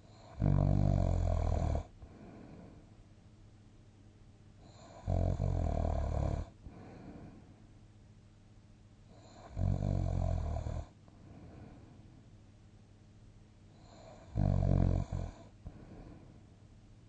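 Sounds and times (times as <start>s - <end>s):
person snoring: 0.0s - 2.8s, 4.7s - 7.4s, 9.2s - 11.8s, 13.8s - 16.2s
quiet breathing: 0.0s - 3.1s, 4.6s - 7.8s, 9.0s - 12.4s, 13.6s - 16.8s.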